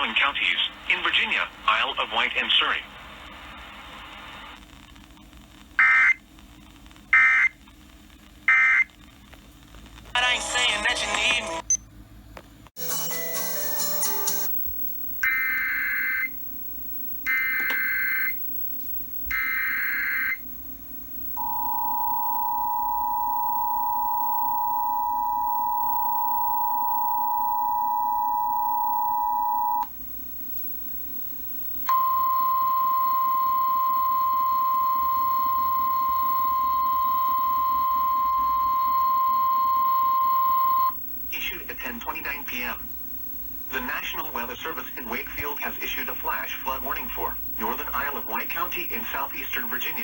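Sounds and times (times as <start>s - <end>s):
data bursts: 31.7s - 43.1s
two-tone attention signal: 31.9s - 41.0s.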